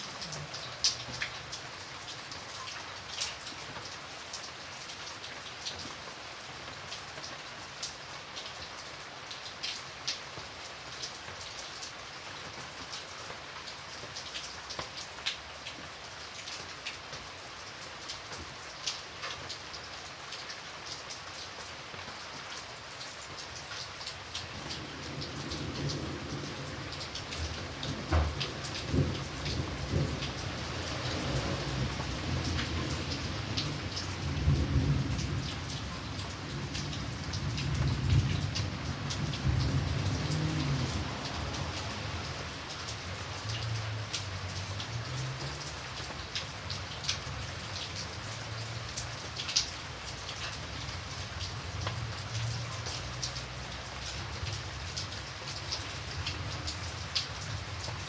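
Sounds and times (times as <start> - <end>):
steady rain: 0.0 - 58.0
thunder rumbling: 24.6 - 42.6.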